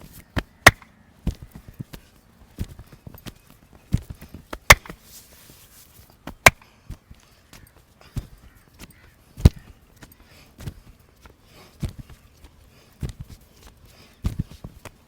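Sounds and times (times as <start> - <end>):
hands slapping skin: 0.3 - 0.9, 4.5 - 5.0.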